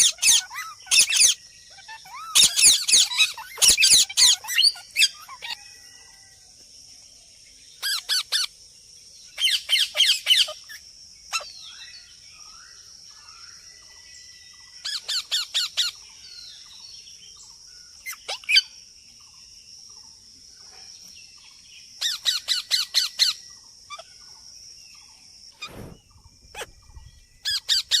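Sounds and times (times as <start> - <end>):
parrot calling: 0.0 - 5.8, 26.5 - 28.0
high-pitched hiss: 25.0 - 28.0.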